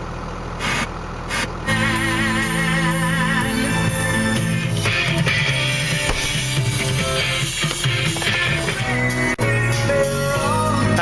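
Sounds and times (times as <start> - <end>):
pop song with guitar: 1.7 - 11.0
bass line: 3.2 - 9.6.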